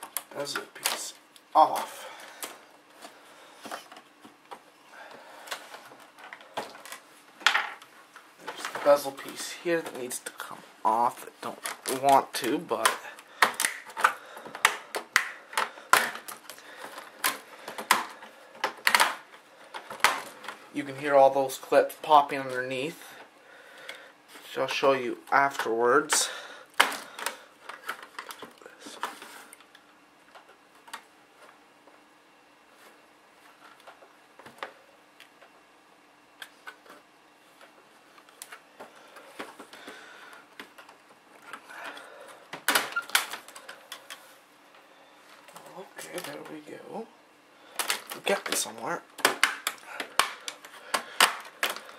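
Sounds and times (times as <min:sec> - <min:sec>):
plastic clips snapping: 0:12.8 - 0:20.6, 0:49.2 - 0:51.9.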